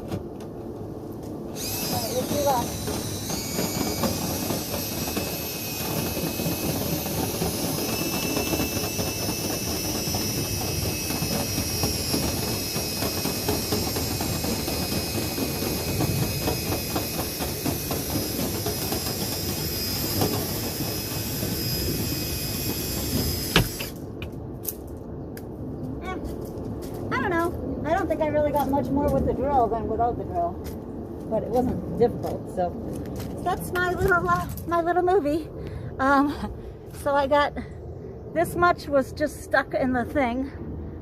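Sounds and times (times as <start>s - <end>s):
electric drill motor whine: 1.5s - 24.0s
rods and brush scraping duct: 1.6s - 23.9s.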